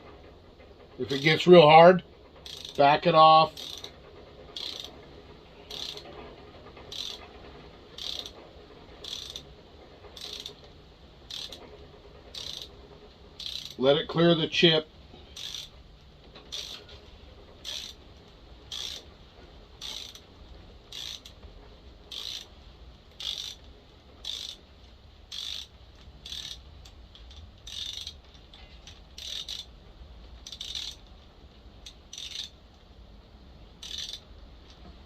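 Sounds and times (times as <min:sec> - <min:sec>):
ratchet wrench clicking: 0:02.4 - 0:04.0, 0:04.6 - 0:05.0, 0:05.7 - 0:06.2, 0:06.8 - 0:07.3, 0:08.0 - 0:08.4, 0:09.0 - 0:09.5, 0:10.2 - 0:11.7, 0:12.3 - 0:12.7, 0:13.4 - 0:13.9, 0:15.4 - 0:15.8, 0:16.4 - 0:17.0, 0:17.6 - 0:18.0, 0:18.7 - 0:19.1, 0:19.8 - 0:20.2, 0:20.9 - 0:21.4, 0:22.1 - 0:24.6, 0:25.3 - 0:29.7, 0:30.4 - 0:31.2, 0:31.8 - 0:32.6, 0:33.8 - 0:34.8.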